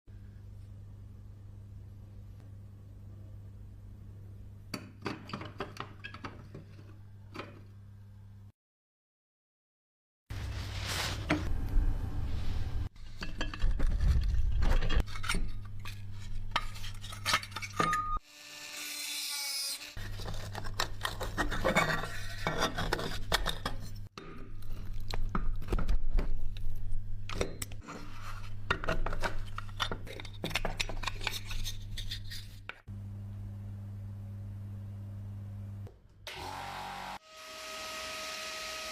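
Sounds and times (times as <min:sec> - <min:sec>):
steady low hum: 0:32.9 - 0:35.9.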